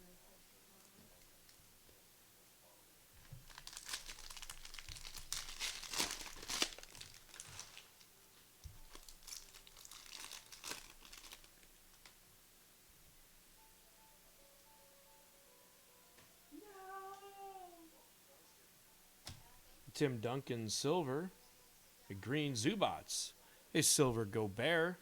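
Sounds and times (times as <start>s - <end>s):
foil wrappers tearing and crinkling: 3.2s - 8.1s, 8.7s - 12.2s.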